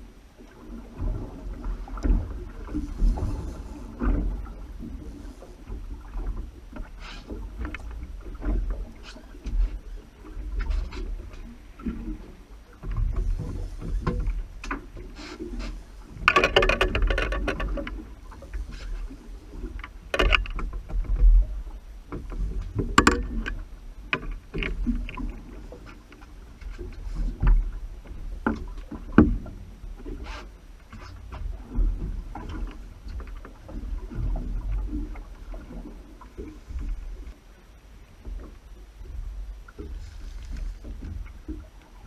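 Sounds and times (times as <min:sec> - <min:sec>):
wind and water rumble: 0:00.0 - 0:42.0
rattling noise: 0:16.1 - 0:18.0, 0:20.1 - 0:20.8, 0:22.8 - 0:25.2
knocks and clicks: 0:16.2 - 0:18.0, 0:20.1 - 0:20.7, 0:22.8 - 0:25.3.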